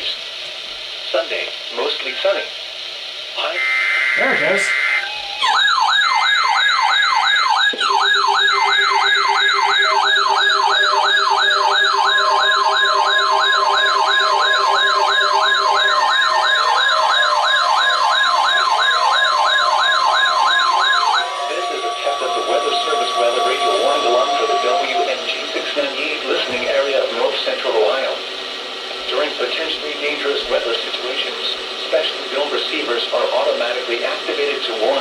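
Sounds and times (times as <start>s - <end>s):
fast warbling alert siren: 3.4s - 28.3s
steady high tone: 3.4s - 35.0s
low beeping tone: 6.6s - 28.3s.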